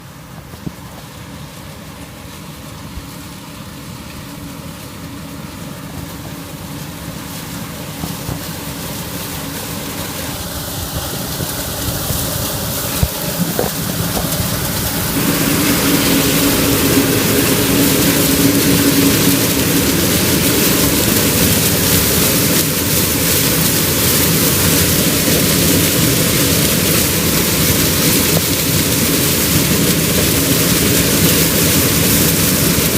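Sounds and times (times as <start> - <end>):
combine harvester engine drone: 0.0 - 32.9
threshing machinery hiss: 7.0 - 32.9.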